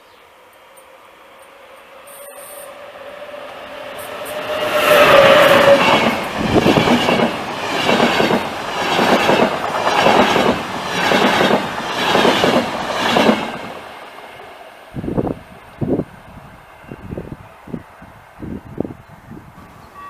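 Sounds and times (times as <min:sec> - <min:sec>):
train wheels clattering: 0:03.9 - 0:13.8.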